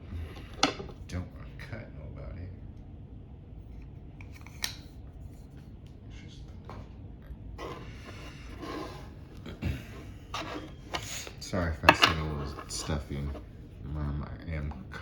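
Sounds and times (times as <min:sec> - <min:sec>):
packaging rustling and scraping: 0:07.6 - 0:13.6.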